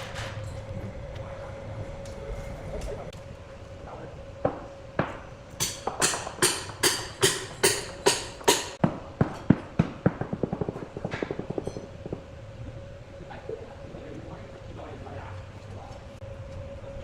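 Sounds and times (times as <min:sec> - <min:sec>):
hand tool striking wood: 0:04.5 - 0:09.5.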